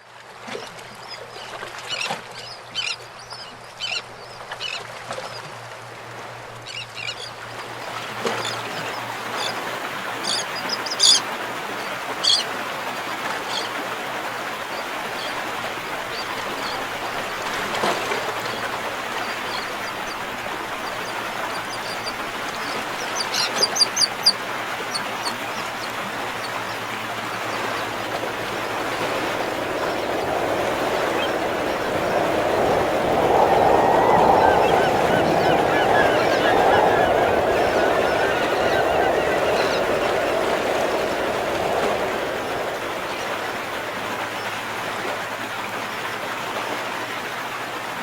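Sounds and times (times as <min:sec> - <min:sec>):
steady rushing noise: 0:19.6 - 0:44.4.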